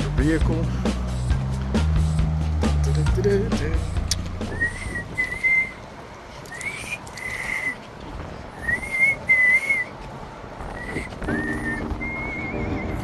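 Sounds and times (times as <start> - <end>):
wind on microphone: 4.2 - 6.2
person whistling: 4.5 - 5.8, 6.5 - 7.8, 8.6 - 9.9, 10.7 - 13.0.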